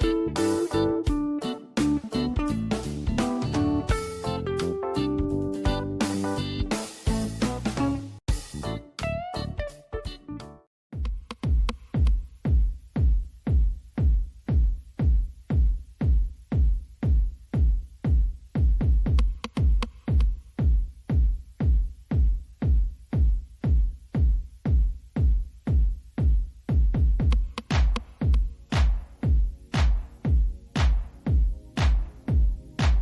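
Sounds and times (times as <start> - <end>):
deep kick drum beat: 0.0 - 8.7, 10.9 - 33.0
electronic music: 0.0 - 10.6, 25.9 - 33.0.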